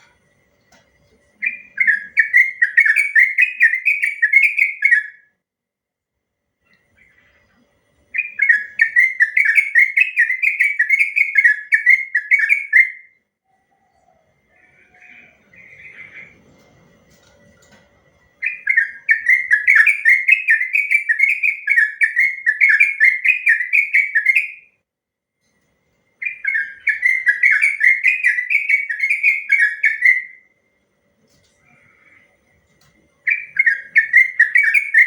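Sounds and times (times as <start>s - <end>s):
bird rolling bubbly song: 8.1s - 13.0s, 15.0s - 24.6s, 26.2s - 30.4s, 33.2s - 35.0s.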